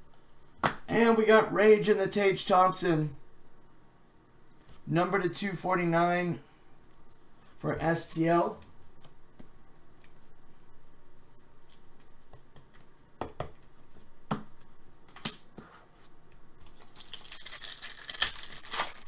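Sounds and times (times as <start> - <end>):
crinkly packaging rustling: 16.6 - 19.0.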